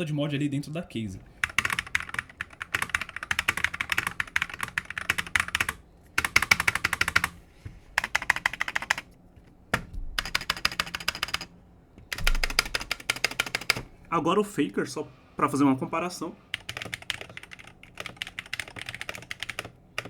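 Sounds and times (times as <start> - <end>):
keyboard keys clacking: 1.4 - 7.4, 8.0 - 9.1, 9.7 - 13.9, 16.5 - 20.0.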